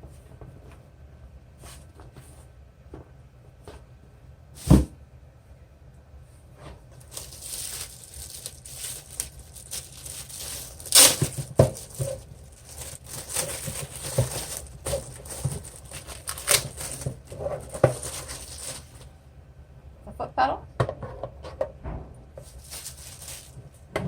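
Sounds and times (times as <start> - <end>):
plastic packaging crinkling: 7.0 - 19.1, 22.4 - 23.8.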